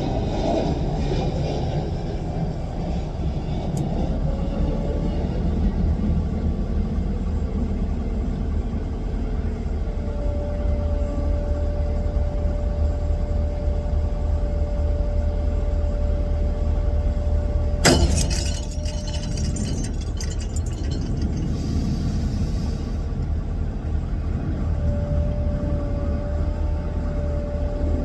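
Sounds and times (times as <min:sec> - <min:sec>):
diesel engine rumbling: 0:01.8 - 0:28.0
sharp clatter: 0:17.8 - 0:21.9.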